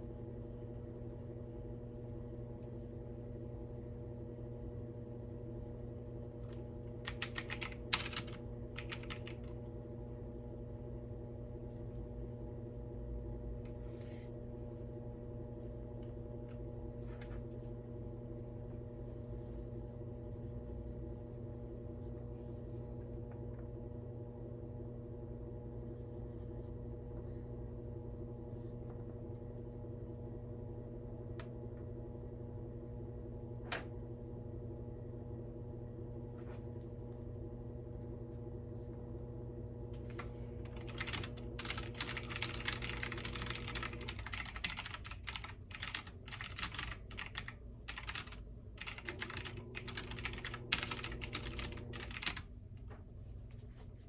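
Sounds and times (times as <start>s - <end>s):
computer keyboard typing: 7.0s - 9.5s, 40.7s - 52.4s
washing machine running: 39.2s - 52.7s.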